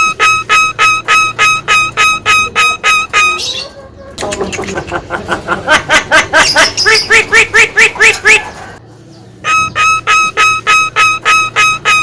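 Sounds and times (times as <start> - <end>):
myna calling with ringing notes: 0.0 - 4.2, 9.4 - 12.0.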